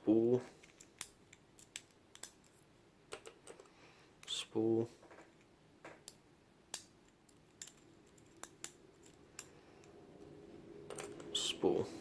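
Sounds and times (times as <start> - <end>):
metal lock pins clicking: 0.6 - 2.5, 6.0 - 9.5, 10.9 - 11.4.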